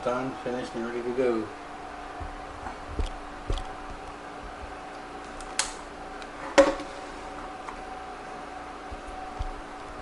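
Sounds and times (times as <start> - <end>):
faint steady hum: 0.0 - 10.0
soft thumps: 2.1 - 4.8.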